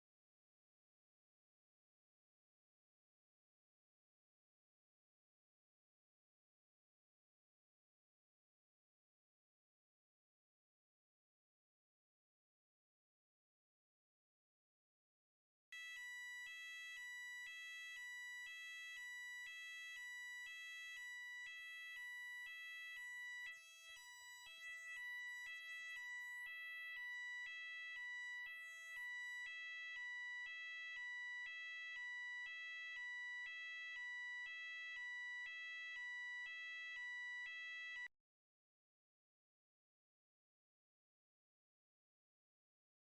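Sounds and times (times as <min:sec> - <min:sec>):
steady piercing alarm tone: 0:15.8 - 0:38.1
two-pitch alarm tone: 0:24.0 - 0:38.1.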